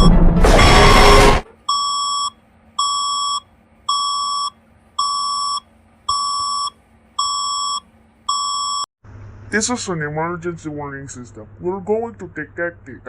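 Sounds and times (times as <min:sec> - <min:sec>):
loud burst of noise: 0:00.0 - 0:01.4
electronic alert beeps: 0:00.0 - 0:08.9.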